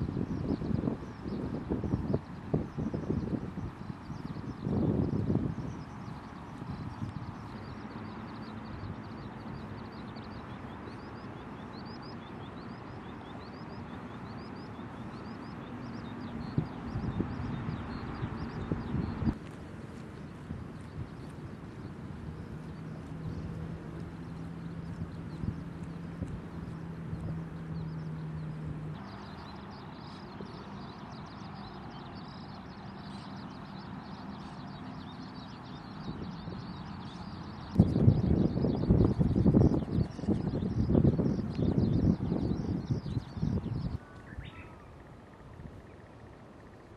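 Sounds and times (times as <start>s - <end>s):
skylark singing: 0.0s - 19.6s, 20.2s - 46.9s
low engine hum: 0.0s - 46.9s
high bird chirping: 24.7s - 45.1s.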